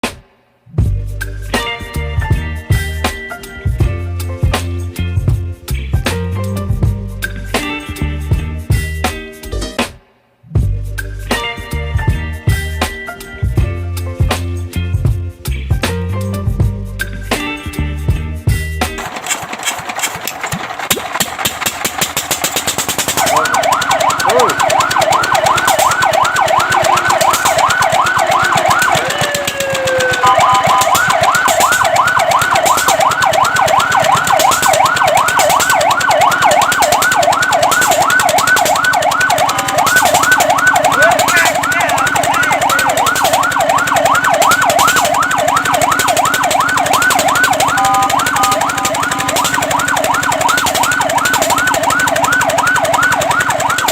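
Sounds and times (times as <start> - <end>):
fire truck siren yelping: 19.0 - 53.9.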